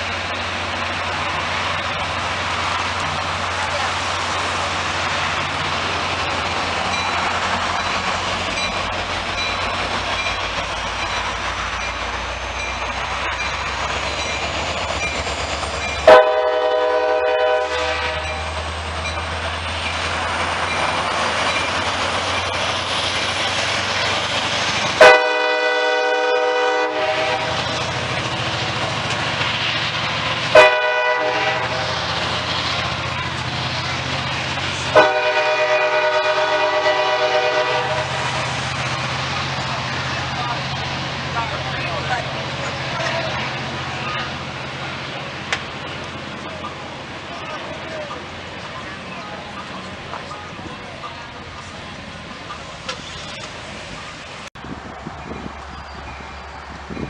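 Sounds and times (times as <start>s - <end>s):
train rumble: 0.0s - 57.0s
train horn blasts: 16.0s - 18.4s, 25.0s - 27.6s, 30.5s - 31.9s, 34.9s - 38.2s.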